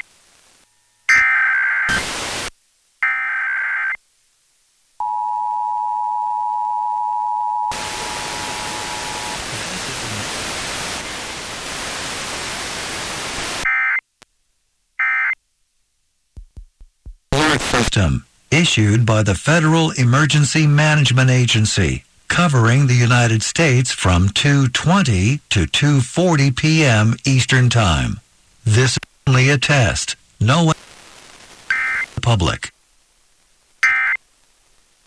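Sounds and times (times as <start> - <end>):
radio static hiss: 0.0 - 1.2, 1.8 - 2.7, 7.7 - 13.7, 17.3 - 35.0
two-tone attention signal: 5.0 - 9.4
data header screeches: 7.7 - 10.0, 31.7 - 32.1.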